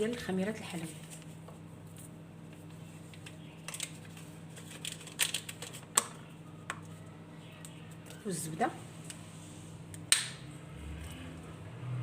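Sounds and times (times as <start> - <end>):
paper sachet rustling: 2.7 - 5.9.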